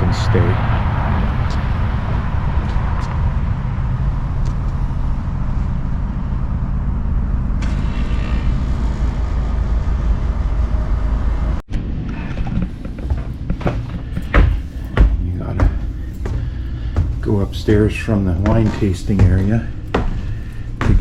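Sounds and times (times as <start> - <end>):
wind buffeting microphone: 0.0 - 7.4.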